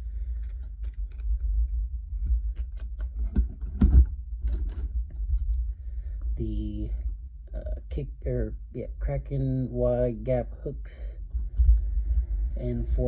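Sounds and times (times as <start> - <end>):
low rumble: 0.0 - 13.0
plastic packaging crinkling: 0.2 - 1.5.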